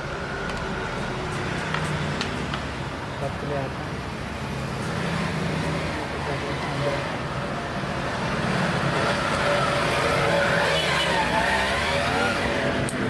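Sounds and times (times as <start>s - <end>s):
road traffic noise: 0.0s - 13.0s
vehicle engine passing: 4.7s - 13.0s.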